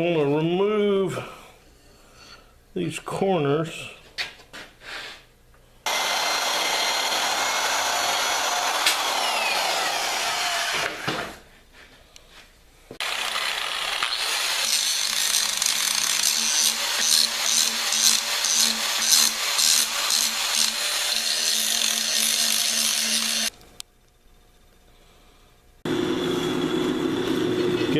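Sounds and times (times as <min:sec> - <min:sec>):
power tool cutting metal: 0:05.9 - 0:11.1, 0:13.0 - 0:23.5.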